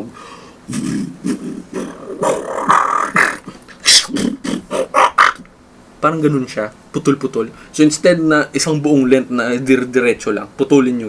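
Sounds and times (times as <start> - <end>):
beatboxing robot sounds: 0.7 - 5.5.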